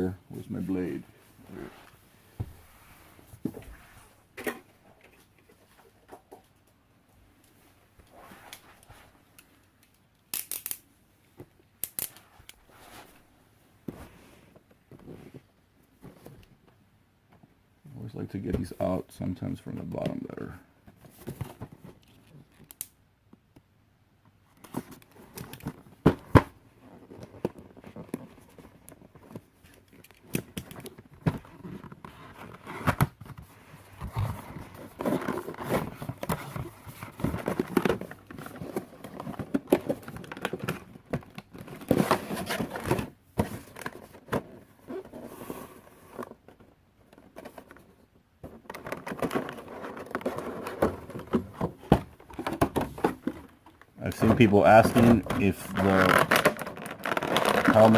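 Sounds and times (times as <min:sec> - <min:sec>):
packaging being opened by hand: 0:54.2 - 0:57.9.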